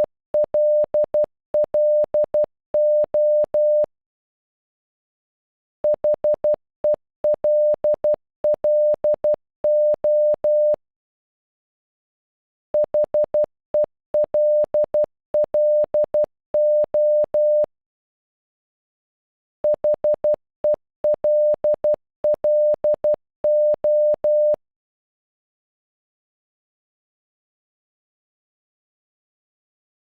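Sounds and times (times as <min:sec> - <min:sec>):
morse code beeps: 0:00.0 - 0:03.9, 0:07.3 - 0:10.8, 0:12.8 - 0:17.7, 0:19.6 - 0:24.6.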